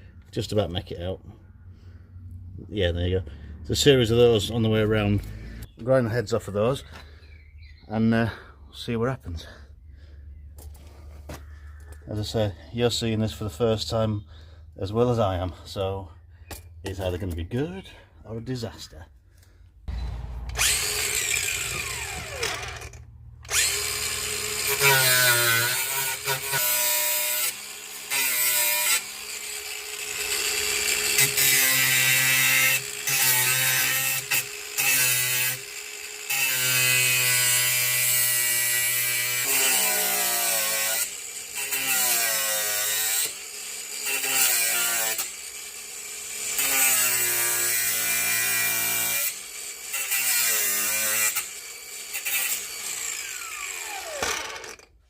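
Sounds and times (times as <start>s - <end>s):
power tool grinding rivets: 20.5s - 55.0s.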